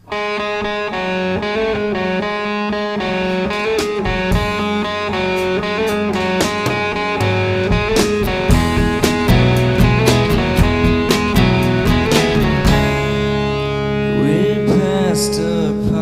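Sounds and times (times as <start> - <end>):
guitar instrumental: 0.0 - 16.0
light drum beat: 3.1 - 13.2.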